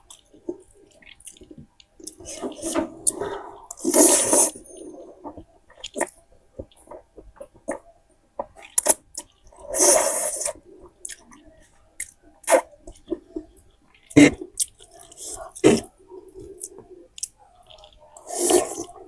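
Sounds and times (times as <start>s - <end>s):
noodle slurp: 2.1s - 4.7s, 9.7s - 10.6s, 18.2s - 19.0s
wet chewing and lip smacks: 16.4s - 19.0s.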